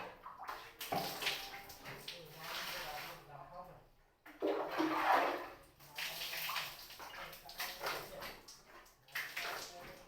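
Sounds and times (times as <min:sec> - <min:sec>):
water splashing: 0:04.4 - 0:08.5.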